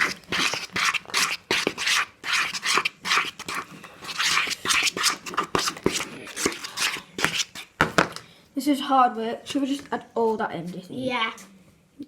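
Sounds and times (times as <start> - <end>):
slime stirred in a bowl: 0.0 - 8.0.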